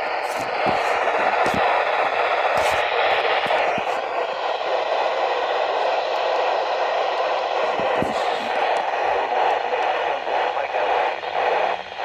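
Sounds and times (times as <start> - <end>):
radio static hiss: 0.0 - 4.3, 7.5 - 12.0.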